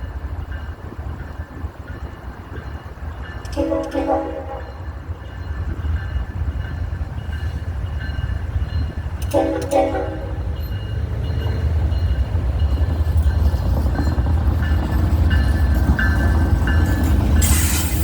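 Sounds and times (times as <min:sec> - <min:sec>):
train rumbling past: 0:00.0 - 0:18.0
locomotive air horn blasts: 0:03.5 - 0:04.7, 0:09.3 - 0:10.5.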